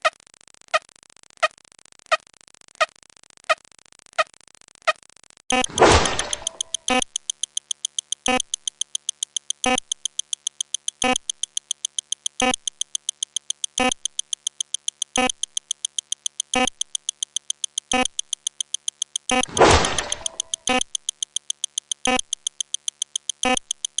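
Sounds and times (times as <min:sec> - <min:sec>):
rapid electronic blips: 0:04.9 - 0:24.0
stronger electronic tick: 0:04.9 - 0:24.0.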